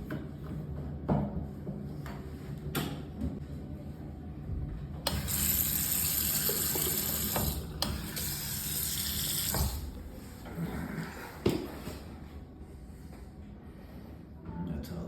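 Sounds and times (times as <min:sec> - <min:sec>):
faucet water running into sink: 0:05.1 - 0:10.0.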